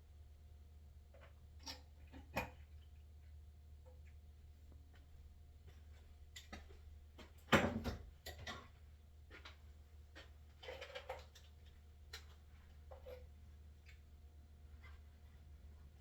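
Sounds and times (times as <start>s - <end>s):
clicks and knocks of handling: 10.2s - 14.0s.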